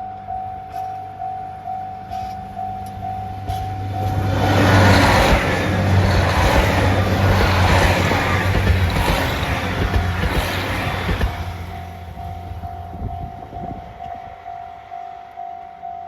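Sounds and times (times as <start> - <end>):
level-crossing bell ringing: 0.0 - 4.3
diesel train passing: 1.0 - 15.4.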